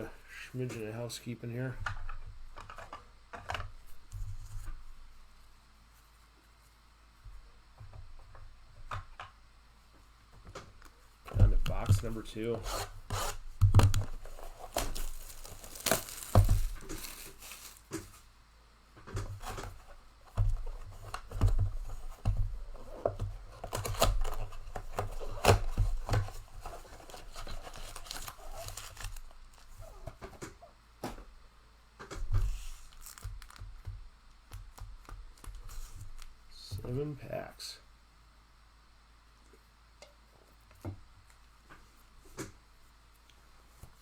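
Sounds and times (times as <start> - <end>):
packaging tearing and crinkling: 12.6 - 18.2, 23.6 - 29.8, 32.5 - 33.8
cardboard clicks and thumps: 13.5 - 18.2, 19.0 - 31.3, 32.0 - 36.9.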